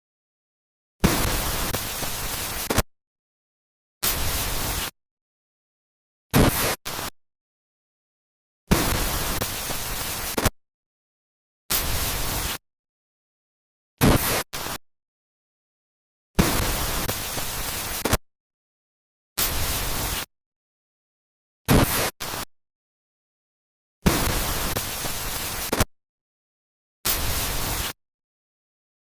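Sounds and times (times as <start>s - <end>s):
static hiss bursts: 1.0s - 2.8s, 4.0s - 5.0s, 6.3s - 7.1s, 8.7s - 10.5s, 11.7s - 12.6s, 14.0s - 14.8s, 16.4s - 18.2s, 19.4s - 20.3s, 21.7s - 22.5s, 24.1s - 25.9s, 27.1s - 28.0s.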